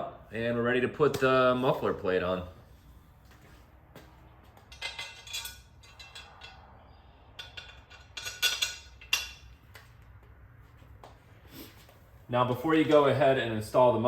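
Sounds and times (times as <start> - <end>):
small metal parts clinking: 4.7 - 6.7.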